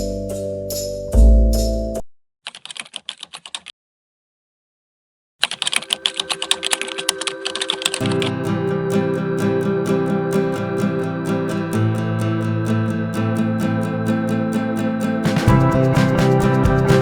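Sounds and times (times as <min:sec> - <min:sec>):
computer keyboard typing: 0:02.5 - 0:03.7, 0:05.4 - 0:08.4
guitar music: 0:06.2 - 0:17.0.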